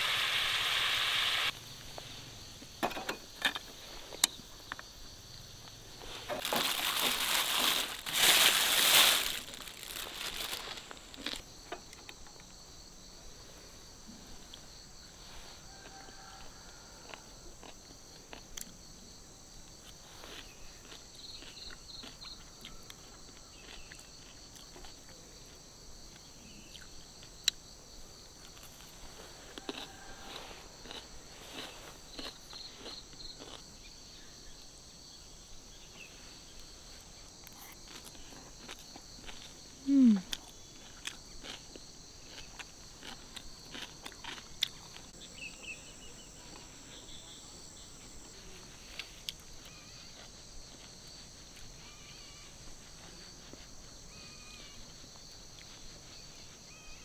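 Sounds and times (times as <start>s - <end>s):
crickets chirping: 0.0s - 57.0s
loud crinkling and rustling: 6.0s - 11.4s.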